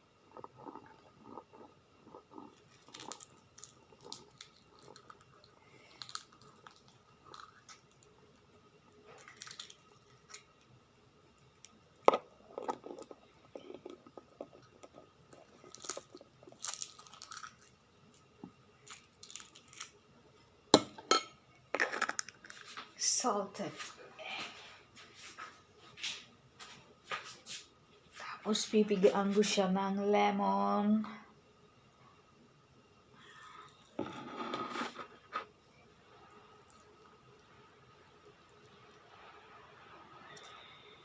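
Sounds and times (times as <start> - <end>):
food crunching: 0.3 - 8.2, 9.1 - 10.7, 11.6 - 20.0.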